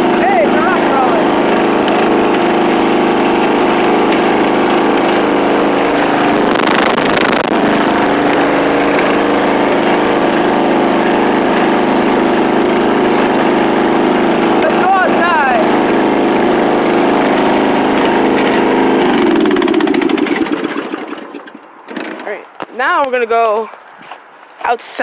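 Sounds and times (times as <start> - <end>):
riding lawn mower engine: 0.0 - 25.0.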